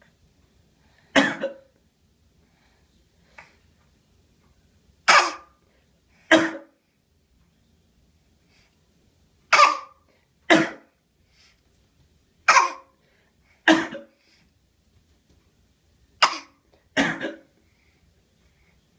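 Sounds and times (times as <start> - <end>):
baby fake coughing: 1.2 - 1.7, 5.1 - 5.6, 6.3 - 6.8, 9.5 - 10.9, 12.5 - 13.0, 13.7 - 14.1, 16.2 - 17.5.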